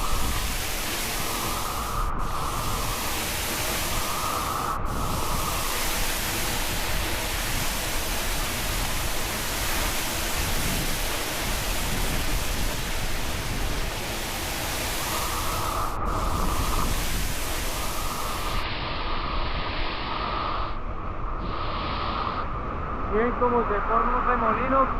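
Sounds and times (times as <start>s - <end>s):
waterfall rushing: 0.0s - 18.6s.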